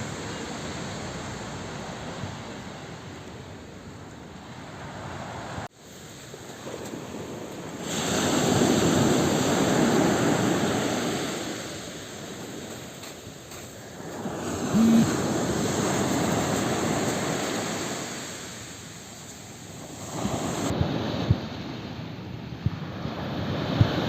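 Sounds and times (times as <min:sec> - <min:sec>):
sea waves washing in: 0:04.4 - 0:24.0
short tone: 0:14.7 - 0:15.1.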